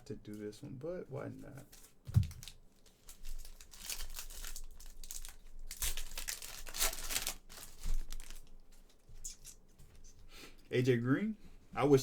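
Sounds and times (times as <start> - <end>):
packaging crinkling and rustling: 1.6 - 9.6.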